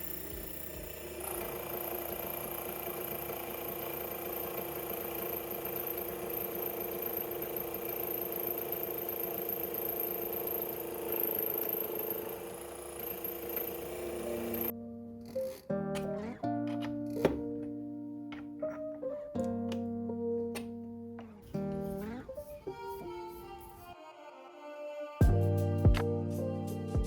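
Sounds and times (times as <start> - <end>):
lathe motor humming: 0.0 - 14.7.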